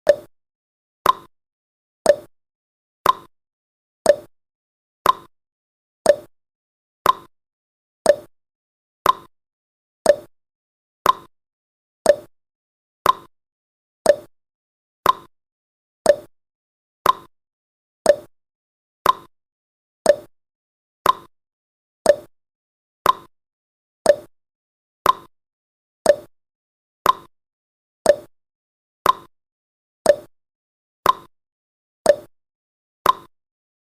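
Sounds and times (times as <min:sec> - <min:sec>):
timer ticking: 0:00.0 - 0:00.3, 0:01.0 - 0:01.3, 0:02.1 - 0:02.3, 0:03.0 - 0:03.3, 0:04.0 - 0:04.3, 0:05.0 - 0:05.3, 0:06.0 - 0:06.3, 0:07.0 - 0:07.3, 0:08.1 - 0:08.3, 0:09.0 - 0:09.3, 0:10.0 - 0:10.3, 0:11.0 - 0:11.3, 0:12.0 - 0:12.3, 0:13.0 - 0:13.3, 0:14.0 - 0:14.3, 0:15.0 - 0:15.3, 0:16.0 - 0:16.3, 0:17.0 - 0:17.3, 0:18.1 - 0:18.3, 0:19.0 - 0:19.3, 0:20.1 - 0:20.3, 0:21.0 - 0:21.3, 0:22.1 - 0:22.3, 0:23.0 - 0:23.3, 0:24.1 - 0:24.3, 0:25.0 - 0:25.3, 0:26.0 - 0:26.3, 0:27.0 - 0:27.3, 0:28.1 - 0:28.3, 0:29.0 - 0:29.3, 0:30.1 - 0:30.3, 0:31.0 - 0:31.3, 0:32.1 - 0:32.3, 0:33.0 - 0:33.3.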